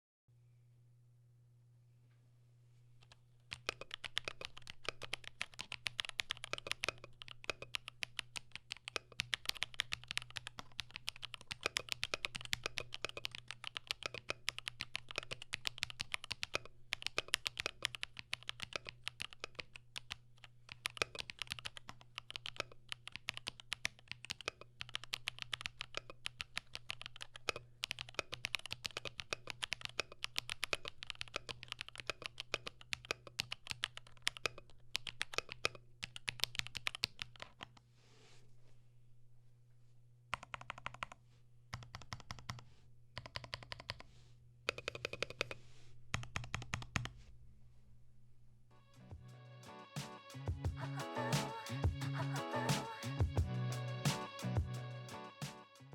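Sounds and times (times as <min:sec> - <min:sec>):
keyboard typing: 0:03.0 - 0:37.8, 0:40.3 - 0:44.1, 0:44.7 - 0:47.2.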